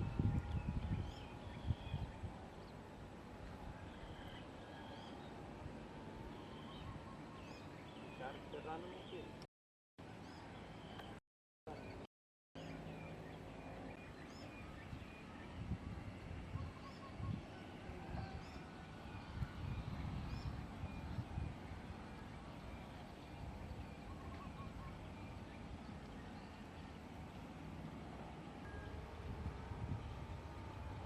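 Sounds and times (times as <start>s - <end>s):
small birds chirping: 6.2s - 9.5s, 10.1s - 27.6s.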